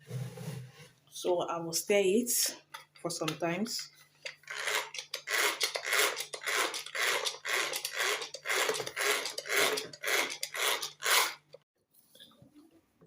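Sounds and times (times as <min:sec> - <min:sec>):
utensil scraping in a bowl: 0:03.9 - 0:11.6.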